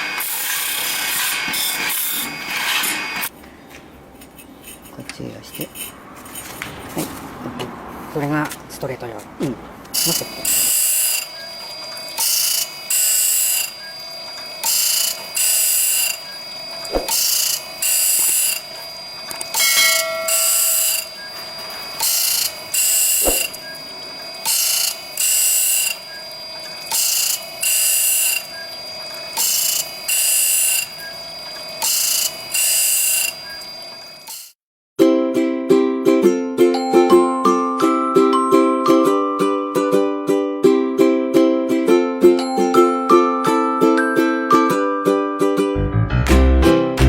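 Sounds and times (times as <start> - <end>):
saw blade machine hissing strokes: 10.0 - 11.3, 12.1 - 19.1, 21.9 - 33.4
sharp knocks: 16.9 - 17.2.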